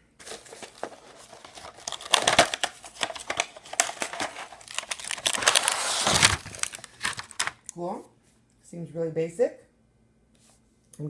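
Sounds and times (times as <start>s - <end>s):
packaging crinkling and rustling: 0.2s - 7.7s.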